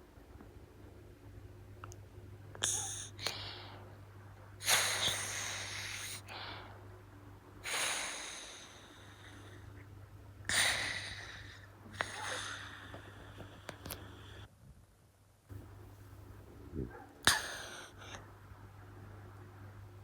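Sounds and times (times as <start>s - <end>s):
steady low hum: 0.0s - 14.5s, 15.4s - 20.0s.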